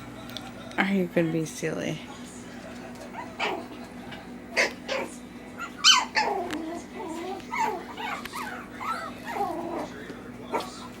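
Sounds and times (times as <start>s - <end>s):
puppies whining and whimpering: 3.1s - 3.8s, 4.5s - 11.0s
puppy yipping: 4.6s - 9.9s.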